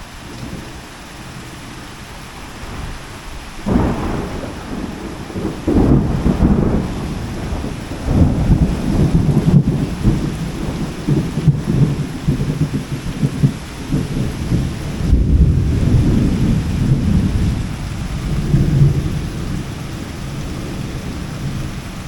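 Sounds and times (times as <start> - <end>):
heavy rain falling: 0.0 - 22.0
wind buffeting microphone: 0.0 - 22.0.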